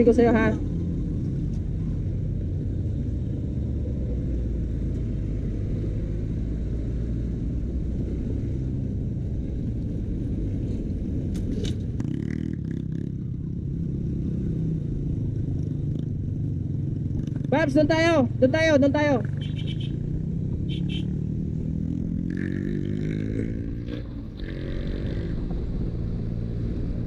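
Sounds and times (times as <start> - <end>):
road noise: 0.0 - 27.0
motorcycle engine running: 9.4 - 27.0.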